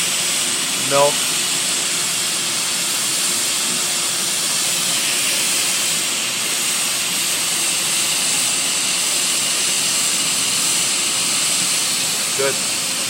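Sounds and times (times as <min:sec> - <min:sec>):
hot-air gun hissing: 0:00.0 - 0:13.0.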